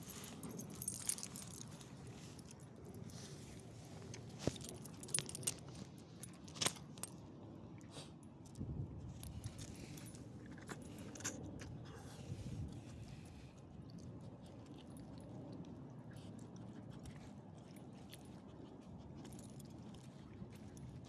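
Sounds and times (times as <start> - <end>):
light metallic jingling: 0.0 - 7.2, 9.2 - 11.4.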